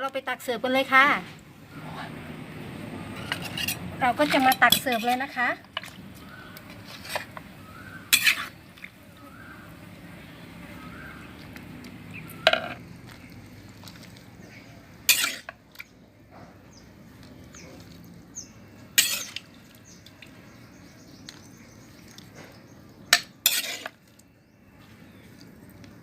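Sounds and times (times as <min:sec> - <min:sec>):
spoon scraping a bowl: 0:03.2 - 0:06.0, 0:06.7 - 0:07.4, 0:08.1 - 0:08.9, 0:15.1 - 0:15.5, 0:19.0 - 0:19.5, 0:23.2 - 0:24.1.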